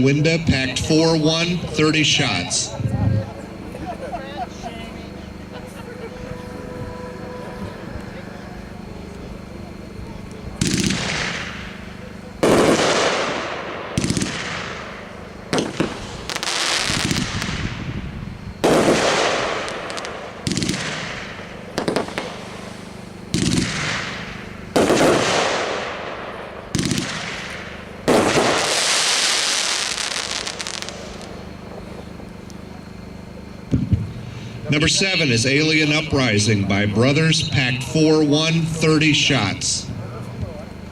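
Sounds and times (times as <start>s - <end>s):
crackling hiss: 1.4s - 36.4s
fireworks cake shots firing: 10.5s - 17.9s, 18.6s - 32.0s.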